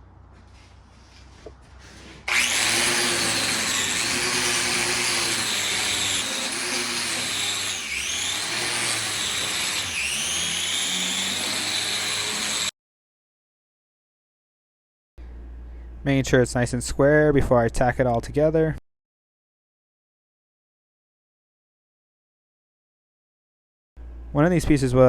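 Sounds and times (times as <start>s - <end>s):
angle grinder grinding steel: 2.2s - 12.7s.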